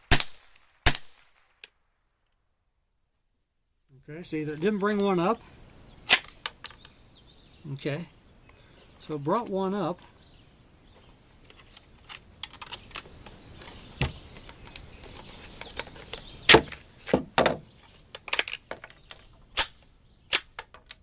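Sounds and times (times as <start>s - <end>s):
rifle shots cracking: 0.0s - 1.7s.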